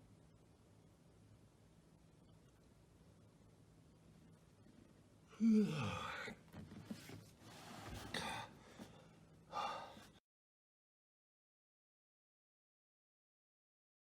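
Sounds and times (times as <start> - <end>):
breathy sounds: 5.3 - 6.4, 8.0 - 10.2
man yawning: 5.3 - 6.4.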